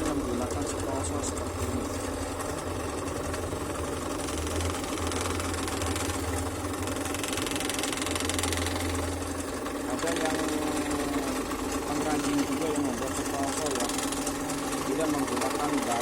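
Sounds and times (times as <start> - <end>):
scroll saw cutting wood: 4.0 - 9.2, 9.9 - 16.0.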